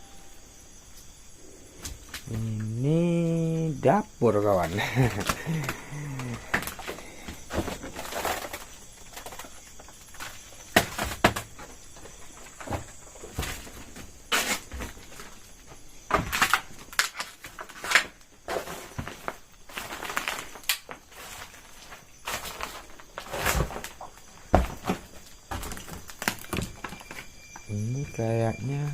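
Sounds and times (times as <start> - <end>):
footsteps on debris-strewn floor: 4.6 - 27.4.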